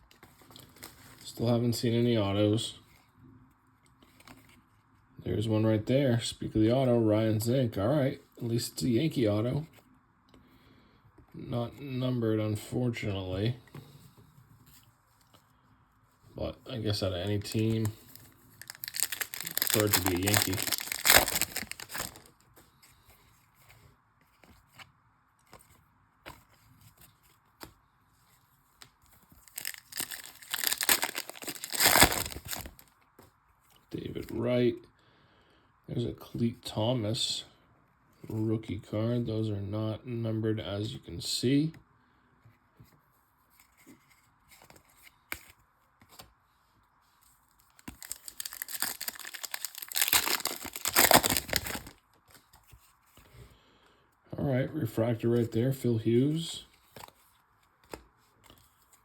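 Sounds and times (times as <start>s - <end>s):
trading cards rustling: 16.9s - 24.8s, 28.8s - 32.9s, 47.6s - 53.3s
foil wrapper tearing open: 17.5s - 22.3s, 29.4s - 32.9s, 47.8s - 52.0s.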